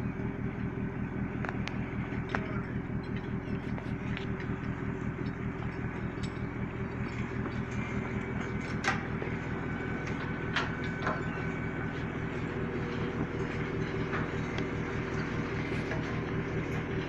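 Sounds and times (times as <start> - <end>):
boat engine running: 0.0 - 17.0.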